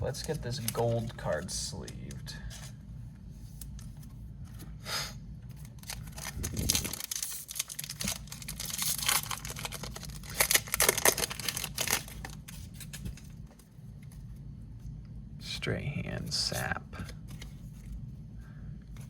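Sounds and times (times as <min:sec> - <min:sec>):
plastic sleeve rustling and crinkling: 0:00.0 - 0:02.6, 0:05.5 - 0:14.3.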